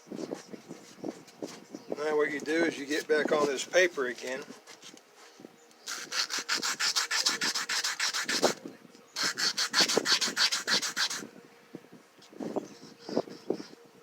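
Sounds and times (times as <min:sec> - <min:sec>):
metal pick rubbing on sandpaper: 0:05.9 - 0:08.6, 0:09.2 - 0:11.3.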